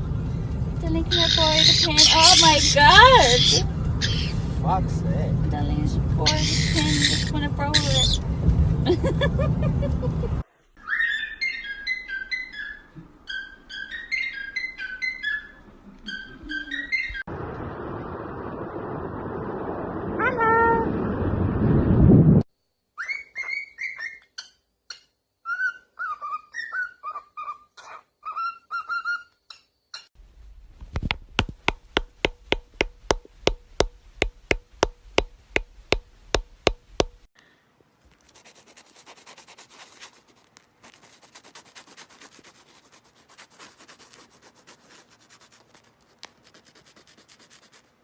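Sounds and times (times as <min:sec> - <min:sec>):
bird chirping: 0:01.0 - 0:04.5, 0:06.2 - 0:08.2, 0:10.8 - 0:17.3, 0:23.0 - 0:30.1
sharp taps: 0:30.8 - 0:37.3
faint scratching: 0:38.1 - 0:48.0.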